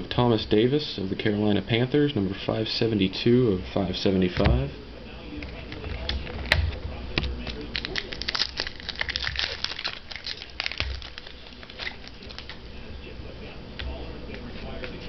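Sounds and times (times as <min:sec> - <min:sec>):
plastic wrapper crinkling: 0:05.8 - 0:12.7.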